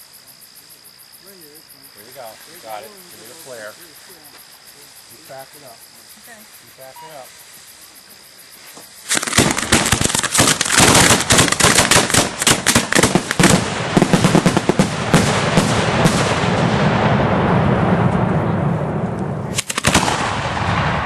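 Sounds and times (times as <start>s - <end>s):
fireworks crackling hiss: 0.0s - 21.0s
fireworks cracking: 8.7s - 21.0s.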